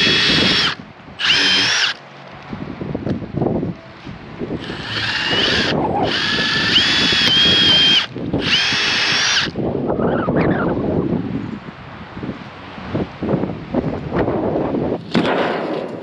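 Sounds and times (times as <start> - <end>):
power drill whining: 0.0 - 2.0, 4.6 - 9.6.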